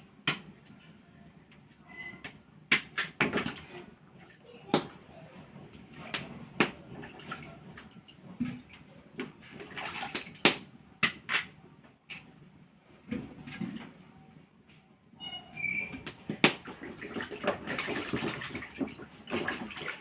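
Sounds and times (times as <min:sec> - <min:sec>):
water splashing and sloshing: 0:02.7 - 0:11.2, 0:13.0 - 0:14.1, 0:15.8 - 0:20.0.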